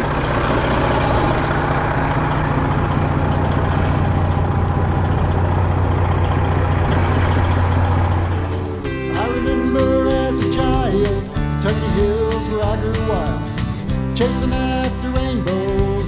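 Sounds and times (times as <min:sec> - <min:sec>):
diesel engine humming: 0:00.0 - 0:16.0
country song: 0:08.2 - 0:16.0.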